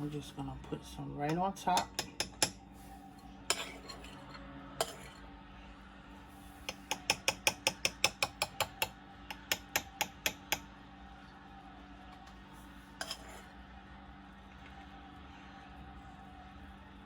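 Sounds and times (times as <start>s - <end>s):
spoon clinking against dishware: 1.3s - 2.6s, 3.5s - 5.2s, 13.0s - 13.4s.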